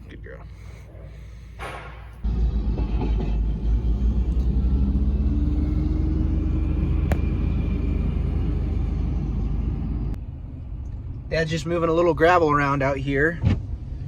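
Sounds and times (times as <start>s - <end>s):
heavy machinery engine rumbling: 1.1s - 10.2s.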